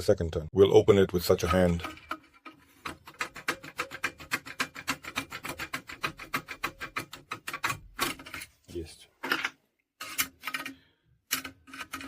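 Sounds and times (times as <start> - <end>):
lock pick tool scraping clicks: 10.0 - 12.0.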